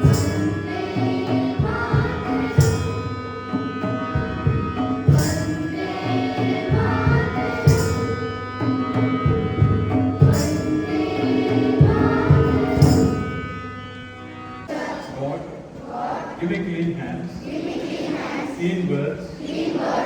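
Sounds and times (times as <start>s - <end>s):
drum beats: 0.0s - 13.6s
sustained chords: 0.0s - 15.6s.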